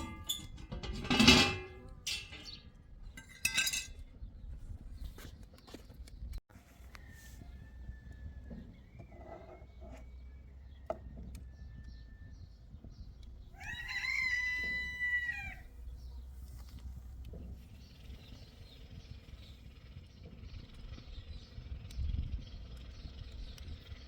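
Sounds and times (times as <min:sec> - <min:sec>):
rooster crowing: 0:13.6 - 0:15.7.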